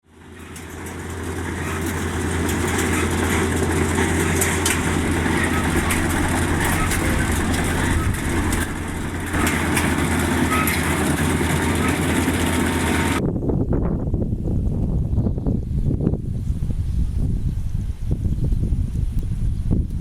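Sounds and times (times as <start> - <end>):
diesel engine running: 0.0 - 13.2.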